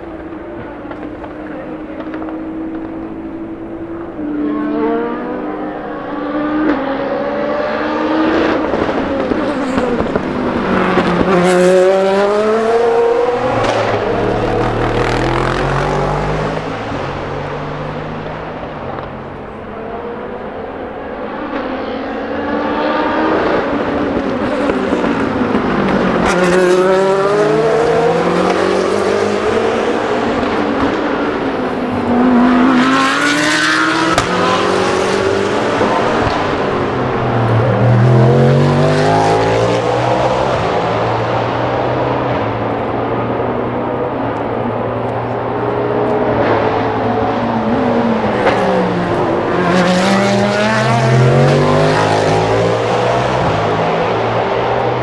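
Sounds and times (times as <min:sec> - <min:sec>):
car accelerating: 0:00.0 - 0:55.0
racing car engines passing: 0:00.0 - 0:55.0
deeper engine note: 0:08.8 - 0:20.4.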